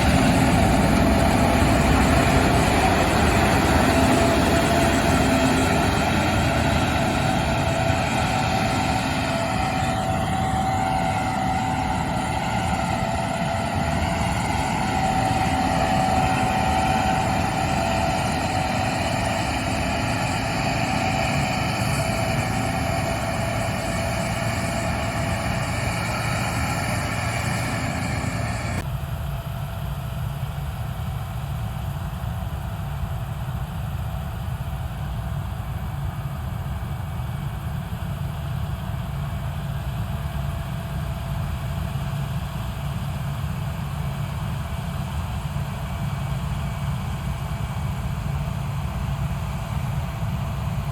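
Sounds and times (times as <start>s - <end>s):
steady machine whine: 0.0s - 29.0s
combine harvester engine: 0.0s - 50.9s.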